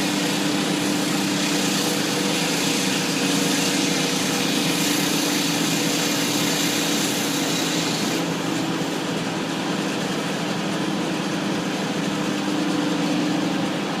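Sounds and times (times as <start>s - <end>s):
blade grinding through concrete: 0.0s - 10.2s
concrete saw engine running: 0.0s - 14.0s.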